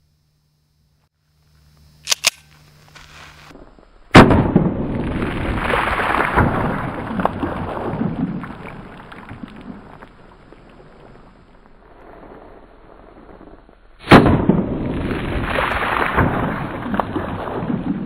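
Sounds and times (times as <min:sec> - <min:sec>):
sharp cracks: 0:02.0 - 0:11.8, 0:14.0 - 0:18.0
loud bang: 0:04.1 - 0:06.9, 0:14.0 - 0:14.8.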